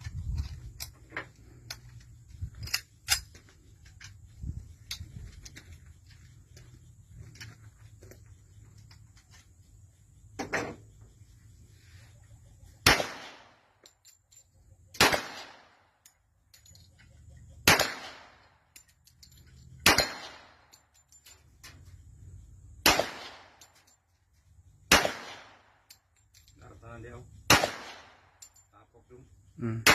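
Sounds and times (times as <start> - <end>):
pistol shots: 12.8 - 13.6, 15.0 - 15.8, 17.6 - 18.5, 19.8 - 20.6, 22.8 - 23.7, 24.9 - 25.7, 27.5 - 28.3.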